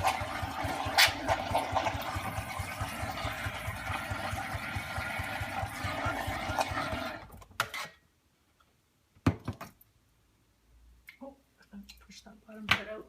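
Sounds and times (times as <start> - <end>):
espresso machine pump pulsing: 0.0 - 7.3.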